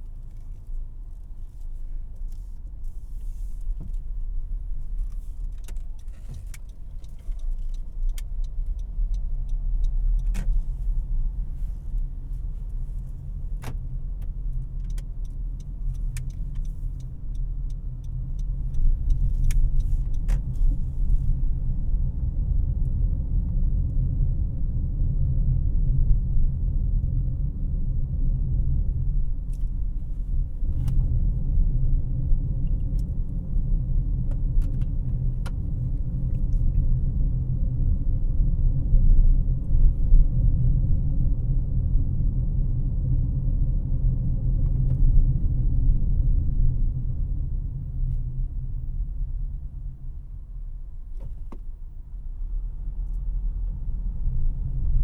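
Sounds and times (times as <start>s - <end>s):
engine and road rumble: 0.0s - 55.0s
light clicks and rattles: 0.2s - 21.3s.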